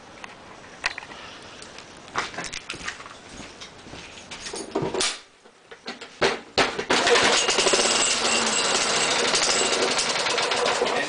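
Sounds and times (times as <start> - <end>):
rustle and clatter: 0.2 - 10.8
lawn mower handlebar rattling: 6.9 - 11.0.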